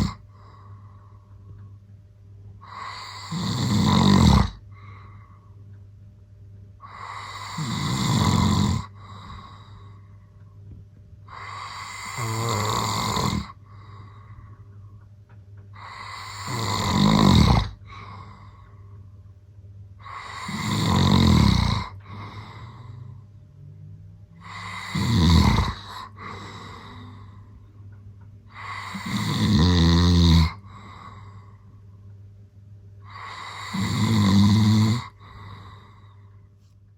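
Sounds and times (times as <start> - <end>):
man snoring: 0.0 - 0.2, 2.6 - 5.1, 6.8 - 10.0, 11.2 - 14.4, 15.8 - 18.8, 20.0 - 23.3, 24.4 - 27.6, 28.5 - 31.6, 33.0 - 36.3.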